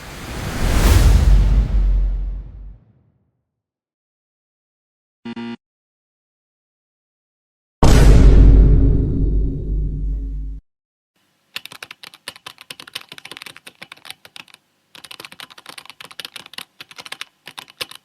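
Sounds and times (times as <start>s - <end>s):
deep boom: 1.0s - 3.0s, 7.8s - 10.6s
computer keyboard typing: 11.5s - 18.0s.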